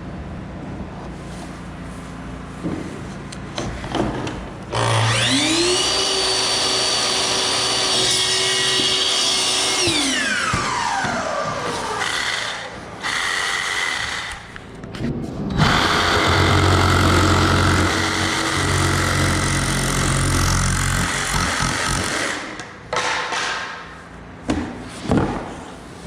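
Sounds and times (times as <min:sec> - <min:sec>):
power saw cutting wood: 0:04.7 - 0:14.6, 0:15.5 - 0:22.8.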